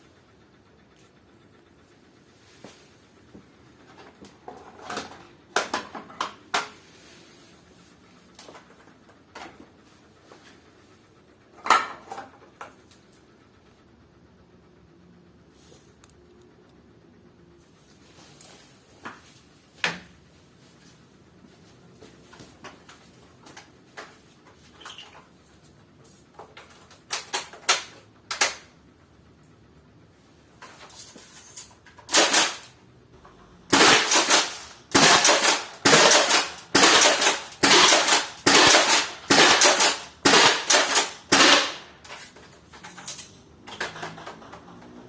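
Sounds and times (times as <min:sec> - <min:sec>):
airsoft gun shots: 0:32.1 - 0:32.6, 0:33.7 - 0:41.8.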